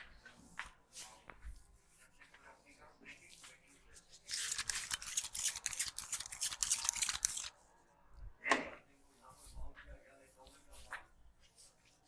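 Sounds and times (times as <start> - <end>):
hands scratching hair and scalp: 4.3 - 7.5.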